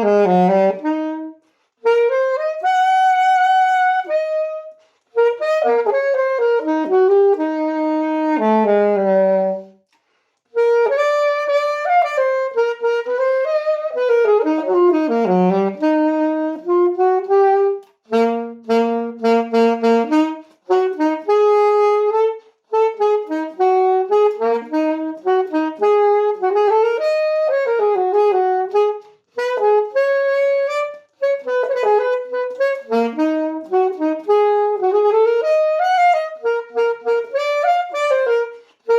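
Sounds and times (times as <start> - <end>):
solo woodwind melody: 0.0 - 38.9.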